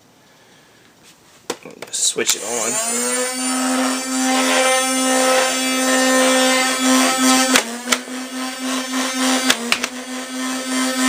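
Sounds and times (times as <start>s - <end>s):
toy blaster motors whining: 2.3s - 11.0s.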